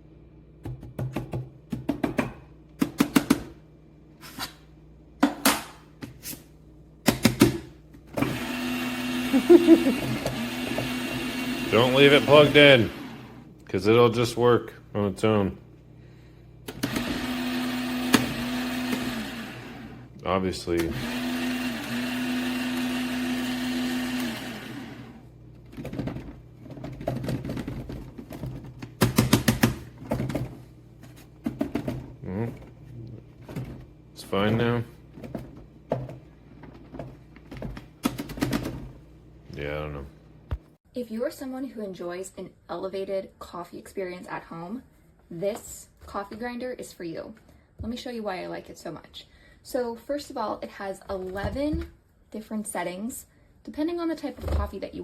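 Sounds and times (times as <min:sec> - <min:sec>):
coffee grinder motor running: 0:08.2 - 0:13.5, 0:16.7 - 0:28.0.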